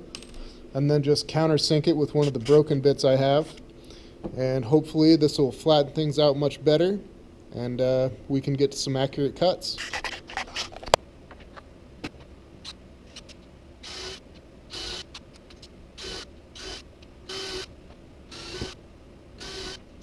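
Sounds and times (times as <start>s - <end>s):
power drill spinning: 13.8s - 15.2s, 16.0s - 17.7s, 18.3s - 18.8s, 19.4s - 19.9s.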